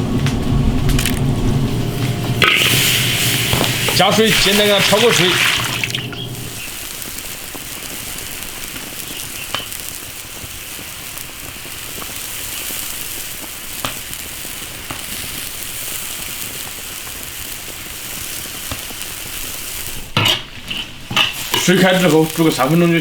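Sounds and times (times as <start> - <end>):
water heating in a wok: 0.0 - 23.0
sharp crackles: 0.2 - 20.2, 20.8 - 23.0.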